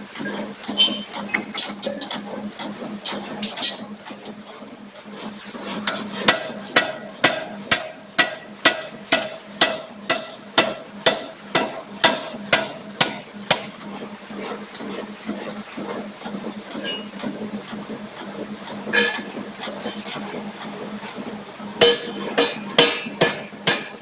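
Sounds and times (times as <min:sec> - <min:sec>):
steady machine hum: 0:00.0 - 0:24.0
forging hammer blows with metallic ring: 0:05.9 - 0:13.7, 0:18.9 - 0:19.3, 0:21.8 - 0:24.0.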